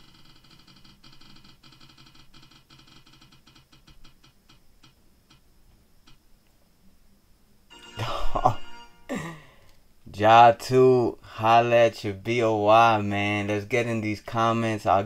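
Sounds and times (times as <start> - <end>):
spinning wheel ticking: 0.0 - 5.4.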